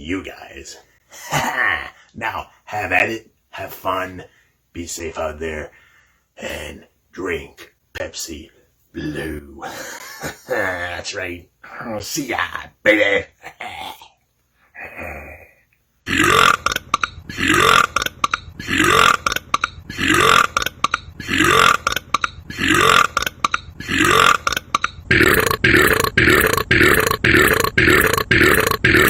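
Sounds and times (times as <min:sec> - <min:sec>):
man burping loudly: 0:01.2 - 0:02.0, 0:13.4 - 0:14.2, 0:14.8 - 0:29.0.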